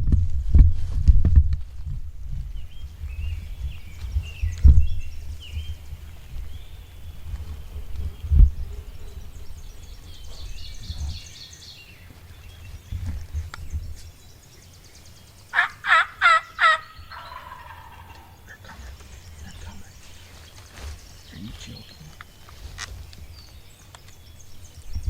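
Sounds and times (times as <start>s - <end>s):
songbirds singing faintly: 0.0s - 25.0s
turkey gobbling: 15.5s - 18.4s.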